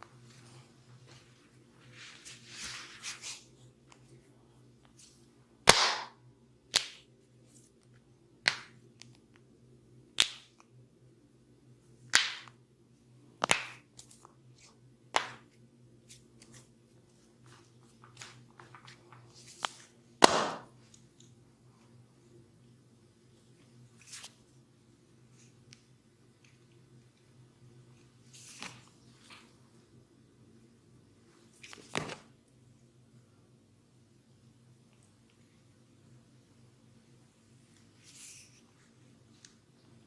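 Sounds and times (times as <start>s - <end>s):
hands cracking on bare skin: 6.7s - 7.0s, 13.4s - 14.2s.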